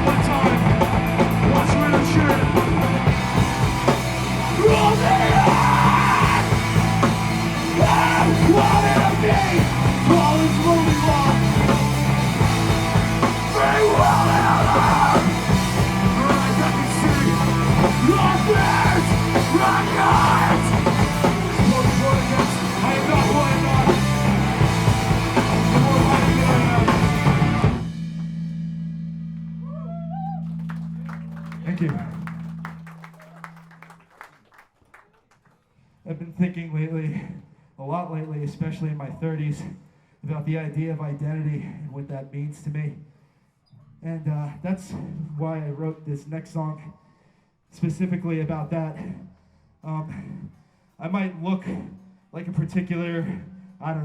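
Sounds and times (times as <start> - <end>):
yelled vocals: 0.0 - 27.8
live rock band playing: 0.0 - 28.0
low amplifier hum: 0.0 - 33.9.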